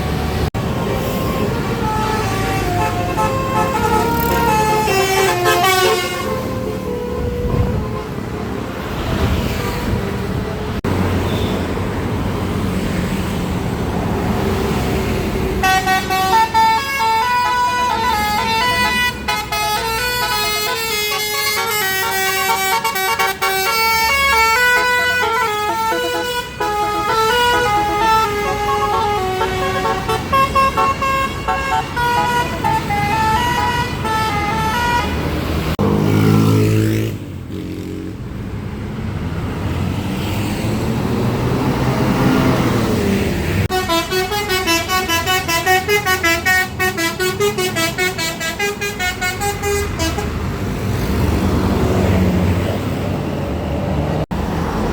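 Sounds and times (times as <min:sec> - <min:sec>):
street and engine noise: 0:00.0 - 0:54.9
bus air horn playing melody: 0:01.0 - 0:08.2, 0:15.5 - 0:35.8, 0:43.7 - 0:50.5.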